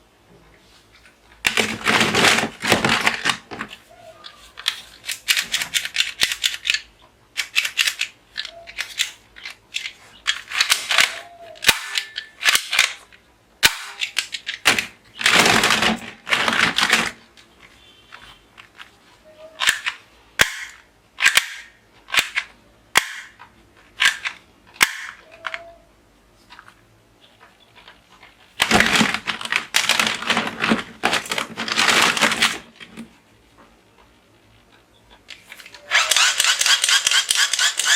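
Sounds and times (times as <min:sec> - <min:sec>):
toy pistol plastic clicks: 0:04.6 - 0:14.8, 0:19.6 - 0:23.4, 0:24.0 - 0:25.6, 0:35.7 - 0:37.9.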